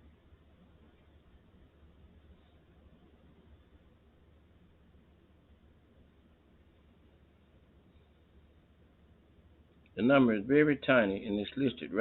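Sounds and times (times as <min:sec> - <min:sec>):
low hum: 0:00.0 - 0:12.0
room hiss: 0:00.0 - 0:12.0
man's voice: 0:10.0 - 0:12.0.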